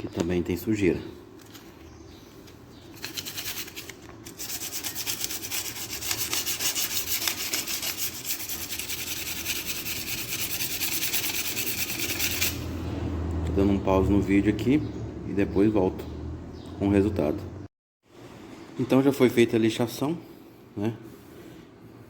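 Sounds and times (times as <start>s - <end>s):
sandpaper rubbing brake disc: 3.0s - 12.6s.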